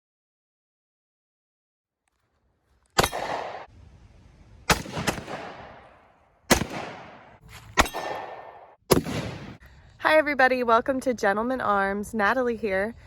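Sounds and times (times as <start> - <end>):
shotgun shots with echo: 3.0 - 3.7, 4.7 - 9.6.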